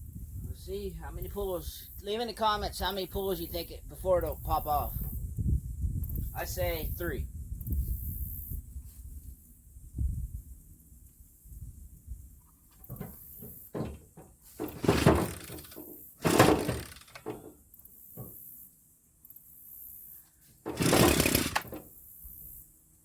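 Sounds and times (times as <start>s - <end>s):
starter rope pull whir: 12.9s - 18.5s, 20.6s - 22.4s.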